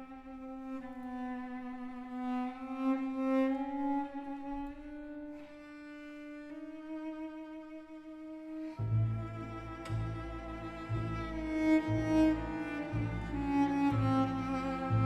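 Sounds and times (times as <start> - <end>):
slow bowed-string melody: 0.0 - 15.0.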